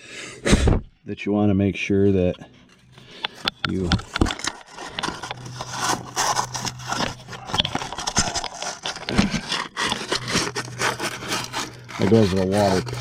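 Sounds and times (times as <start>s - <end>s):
steady low hum: 0.0s - 13.0s
sandpaper scraping metal: 3.8s - 13.0s.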